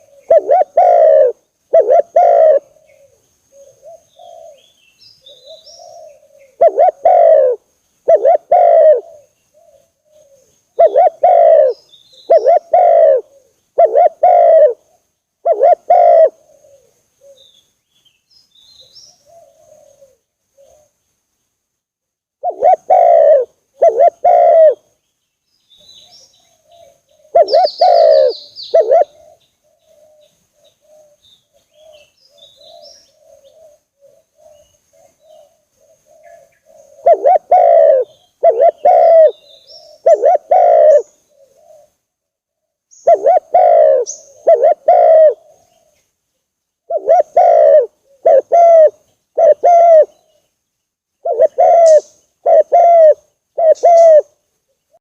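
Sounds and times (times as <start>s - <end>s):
doves cooing: 0.0s - 17.5s, 19.1s - 21.0s, 22.4s - 24.9s, 25.9s - 42.1s, 43.0s - 46.0s, 46.9s - 50.4s, 51.2s - 55.0s
small birds chirping faintly: 0.0s - 55.0s.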